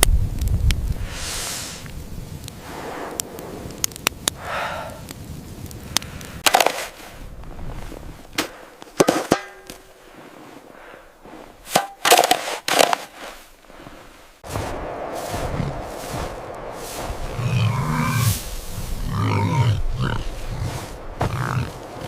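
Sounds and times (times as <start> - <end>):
sharp clicks and cracks: 1.8 - 4.4, 5.0 - 7.0.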